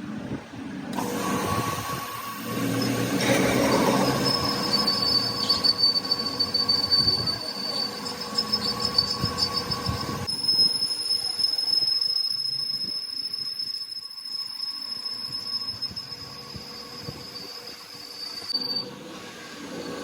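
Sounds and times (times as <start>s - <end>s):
high-pitched metallic squeal: 1.0s - 20.0s.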